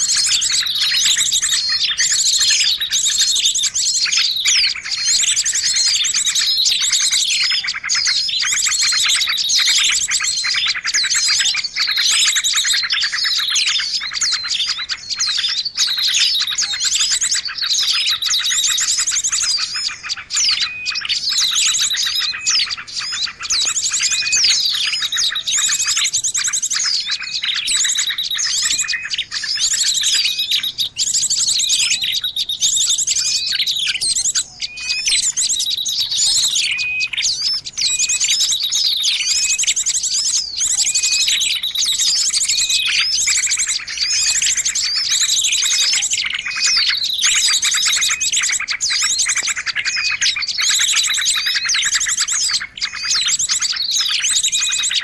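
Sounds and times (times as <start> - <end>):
chorus of small birds chirping: 0.0 - 55.0.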